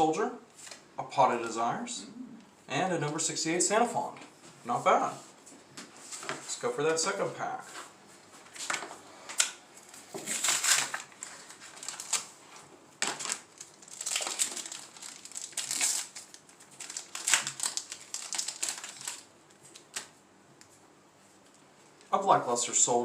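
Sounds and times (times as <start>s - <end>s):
foil wrapper crinkling: 9.8s - 20.2s.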